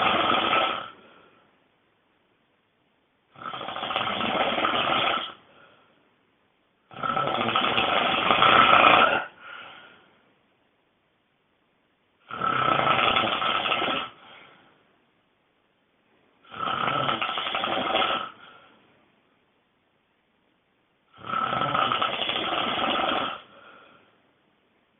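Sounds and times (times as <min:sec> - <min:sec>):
person snoring loudly: 0:00.0 - 0:01.1, 0:03.3 - 0:05.4, 0:06.9 - 0:09.5, 0:12.2 - 0:14.4, 0:16.4 - 0:18.6, 0:21.1 - 0:23.8
quiet breaths: 0:00.0 - 0:01.8, 0:03.3 - 0:06.2, 0:06.8 - 0:10.5, 0:12.2 - 0:15.1, 0:16.0 - 0:19.3, 0:21.0 - 0:24.9.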